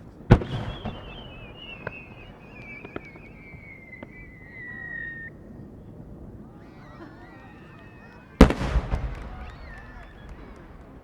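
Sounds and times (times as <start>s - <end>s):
faint pops: 0.3s - 4.3s
firework whistle falling in pitch: 0.3s - 5.4s, 6.6s - 11.0s.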